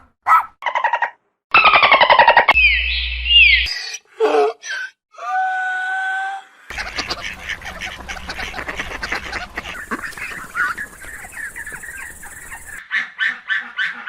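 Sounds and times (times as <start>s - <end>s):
waterfowl calling: 6.7s - 14.0s.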